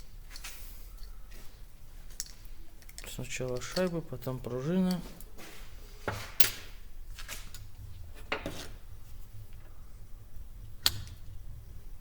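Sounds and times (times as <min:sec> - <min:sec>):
low steady hum: 0:00.9 - 0:12.0
small metal parts clinking: 0:02.1 - 0:05.1.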